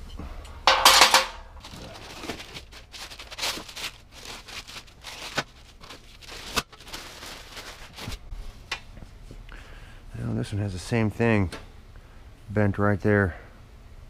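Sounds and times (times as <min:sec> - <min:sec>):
metal parts clicking and knocking: 0:00.7 - 0:01.4
packing material rustling: 0:01.1 - 0:08.3.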